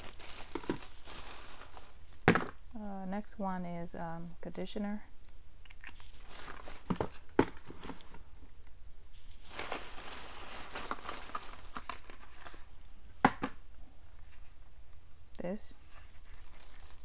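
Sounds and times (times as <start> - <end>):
packaging rustling and crinkling: 0.0 - 2.6, 5.8 - 8.3, 9.1 - 12.8, 15.8 - 17.0
items knocking as set down: 2.2 - 2.6, 6.8 - 8.2.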